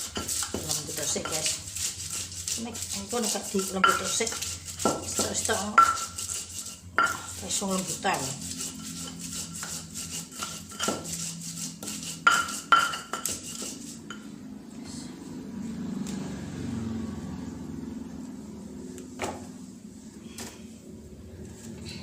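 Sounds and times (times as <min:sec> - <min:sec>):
stone pestle knocking in mortar: 0:00.0 - 0:13.8.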